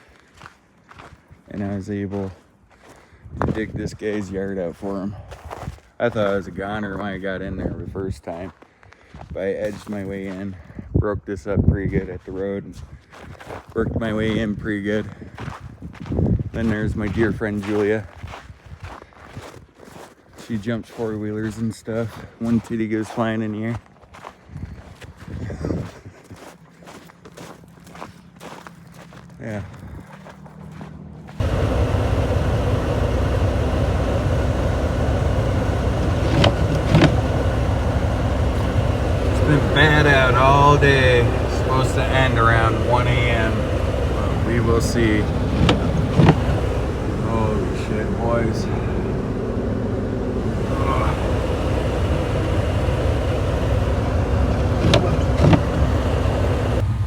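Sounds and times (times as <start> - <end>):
pickup truck engine rumbling: 30.1 - 57.0
short knocks: 35.4 - 37.8, 38.4 - 47.2, 54.4 - 56.1.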